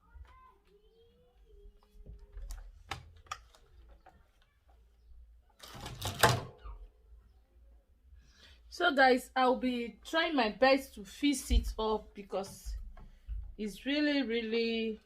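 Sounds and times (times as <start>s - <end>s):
plastic parts clicking: 2.3s - 4.5s.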